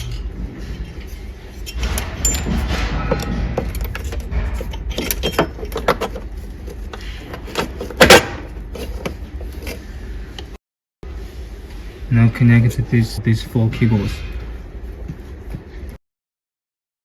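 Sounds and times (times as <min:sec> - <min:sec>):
metal plates clinking and knocking: 0:00.0 - 0:09.1.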